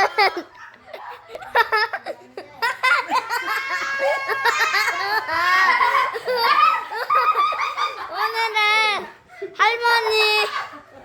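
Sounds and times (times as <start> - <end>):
children laughing and giggling: 0.0 - 11.0
children squealing: 3.2 - 8.1.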